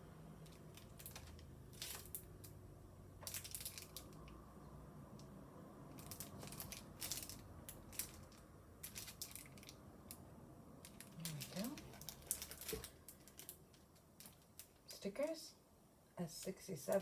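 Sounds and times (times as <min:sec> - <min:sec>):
plastic packaging crinkling: 0:00.5 - 0:02.3, 0:03.2 - 0:04.4, 0:05.9 - 0:09.8, 0:10.8 - 0:15.0.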